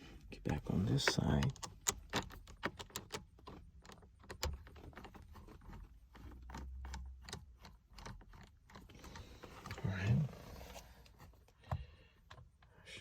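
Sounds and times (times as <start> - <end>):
screwdriver clicks and metallic rattles: 1.0 - 9.8.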